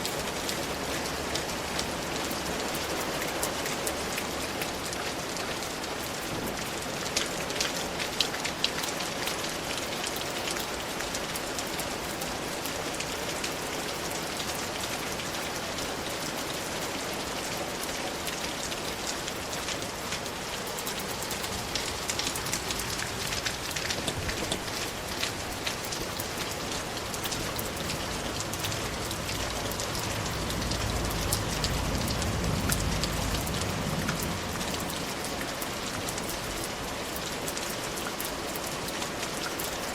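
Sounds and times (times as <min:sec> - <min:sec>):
steady rainfall: 0:00.0 - 0:39.9
water drips: 0:00.0 - 0:39.9
low rumble: 0:28.4 - 0:34.9.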